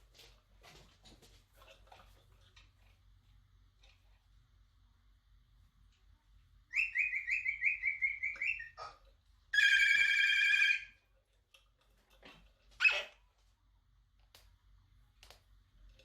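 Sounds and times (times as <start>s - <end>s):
cockatoo mimicking telephone ring: 9.5s - 11.0s.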